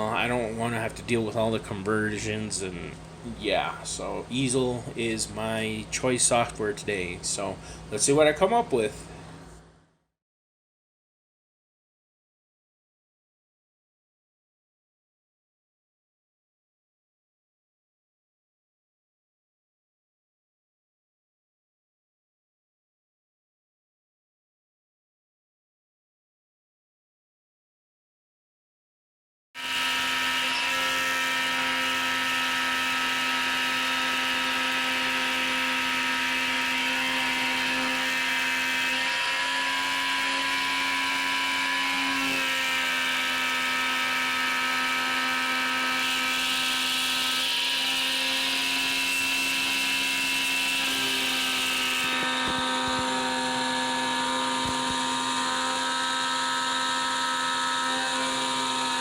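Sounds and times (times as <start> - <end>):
router spindle high whine: 29.6 - 59.0.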